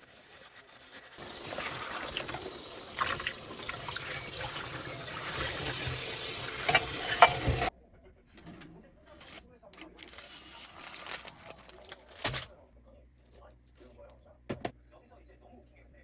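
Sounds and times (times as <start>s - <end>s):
tap water running into sink: 1.2s - 7.7s
dishes clinking: 4.6s - 7.7s.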